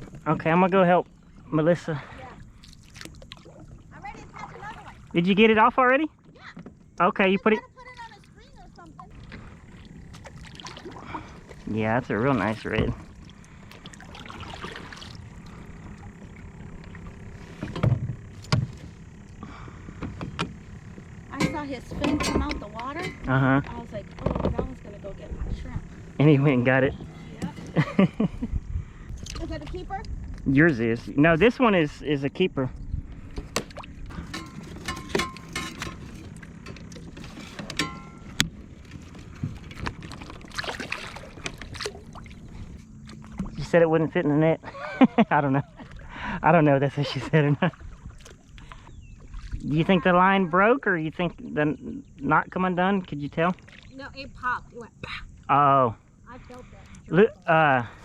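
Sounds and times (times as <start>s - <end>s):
wind and water rumble: 0.0s - 58.0s
gear knocking against hull: 19.9s - 26.1s.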